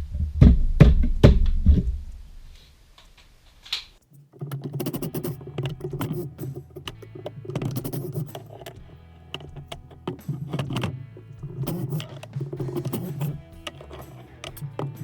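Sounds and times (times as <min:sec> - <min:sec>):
sharp knocks and clicks: 0:04.0 - 0:15.0
background music: 0:04.8 - 0:15.0.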